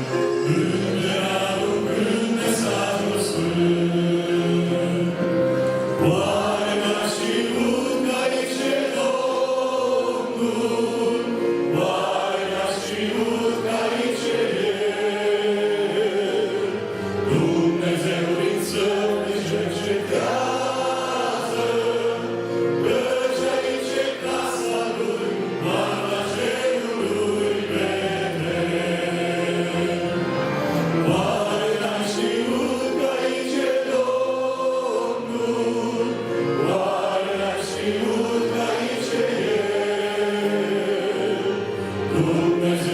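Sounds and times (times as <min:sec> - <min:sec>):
choir singing a hymn: 0:00.0 - 0:42.9.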